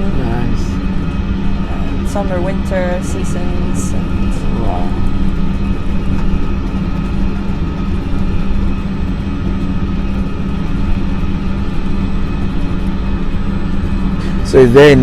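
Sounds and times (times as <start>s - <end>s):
constant low hum: 0.0s - 15.0s
jet cabin engine drone: 0.0s - 15.0s.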